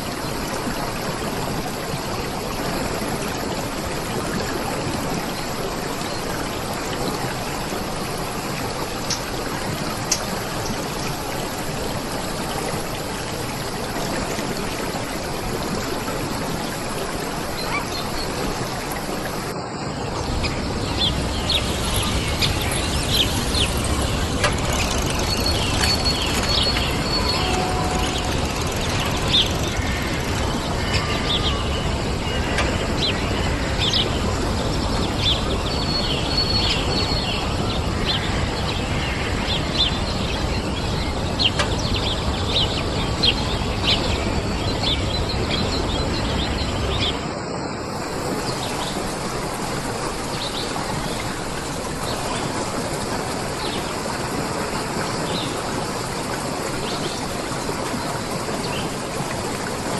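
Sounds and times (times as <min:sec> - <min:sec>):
steady rushing noise: 0:00.0 - 0:36.9
running water: 0:00.0 - 0:59.9
small birds chirping: 0:20.2 - 0:31.7.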